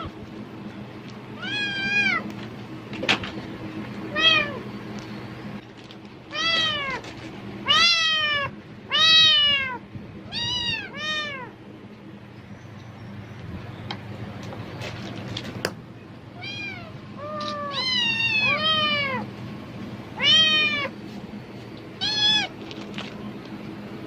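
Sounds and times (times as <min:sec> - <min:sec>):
cat meowing: 0:01.4 - 0:02.3, 0:04.1 - 0:04.6, 0:06.3 - 0:07.0, 0:07.6 - 0:11.6, 0:16.4 - 0:19.3, 0:20.2 - 0:20.9, 0:22.0 - 0:22.6.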